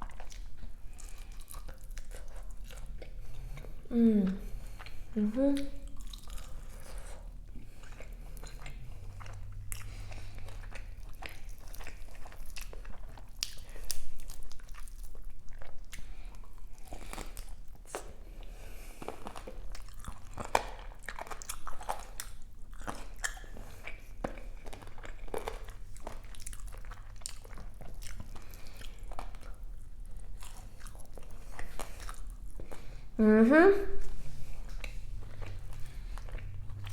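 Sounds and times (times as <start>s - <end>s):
chewing: 0.0s - 33.2s, 33.9s - 36.9s
crunching fried chicken bites: 5.9s - 32.6s.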